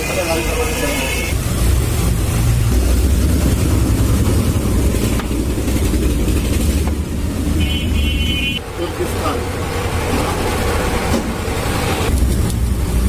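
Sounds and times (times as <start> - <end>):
vehicle engine rumbling: 0.0 - 13.0.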